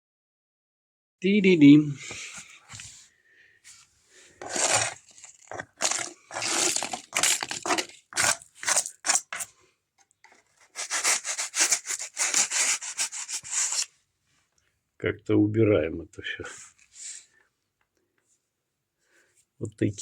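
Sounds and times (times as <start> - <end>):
rough scraping on wooden floor: 2.0 - 3.0, 3.7 - 9.5, 10.2 - 13.9.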